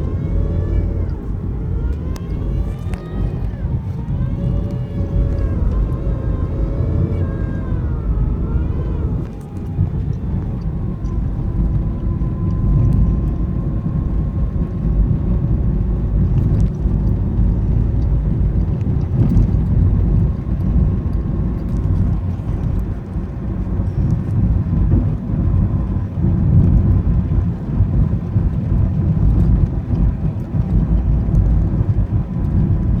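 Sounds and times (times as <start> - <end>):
road and engine rumble: 0.0 - 33.0.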